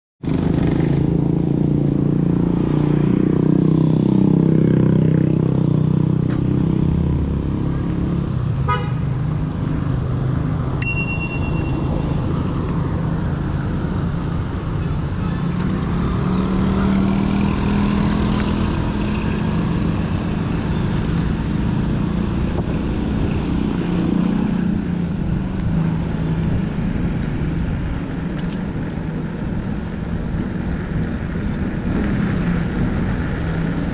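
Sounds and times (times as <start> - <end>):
road traffic: 0.2 - 33.9
high-pitched beep: 10.8 - 12.5.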